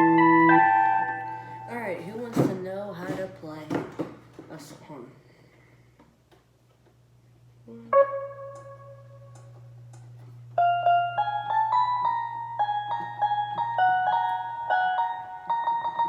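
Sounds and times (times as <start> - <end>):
keyboard playing simple tune: 0.0 - 2.2, 7.7 - 16.0.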